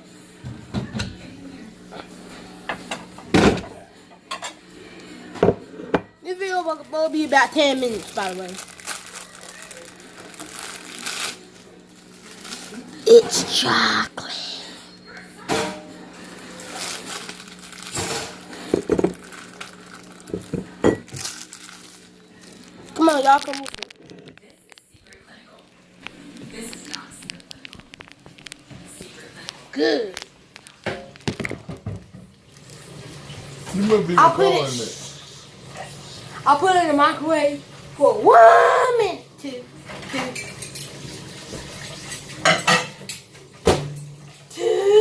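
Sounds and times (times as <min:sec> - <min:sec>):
dishes and utensils clinking: 0:02.6 - 0:04.6, 0:12.3 - 0:13.8, 0:15.0 - 0:19.6, 0:20.3 - 0:21.5, 0:39.8 - 0:44.3
rustling and crinkling: 0:06.5 - 0:13.0, 0:16.6 - 0:31.5.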